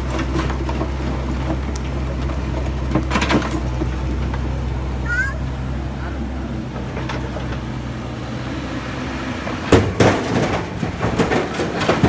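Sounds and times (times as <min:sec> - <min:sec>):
sharp knocks and clanks: 0:00.0 - 0:04.4, 0:06.7 - 0:07.8, 0:09.5 - 0:12.0
heavy equipment engine running: 0:00.0 - 0:12.0.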